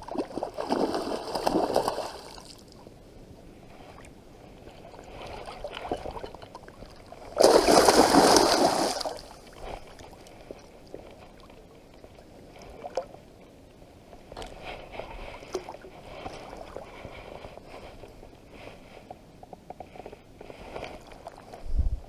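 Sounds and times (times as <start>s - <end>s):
water splashing: 0.0s - 2.6s, 5.2s - 9.6s
water lapping: 0.0s - 2.9s, 3.6s - 13.2s.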